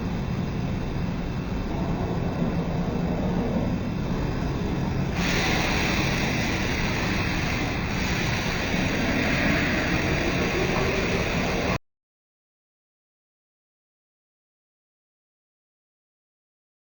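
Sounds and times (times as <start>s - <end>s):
machining center whirring: 0.0s - 11.8s.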